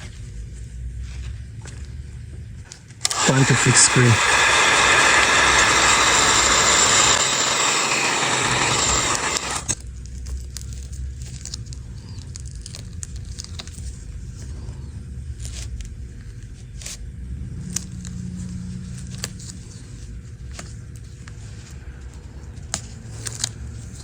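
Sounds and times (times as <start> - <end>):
air tool rushing: 3.0 - 9.8.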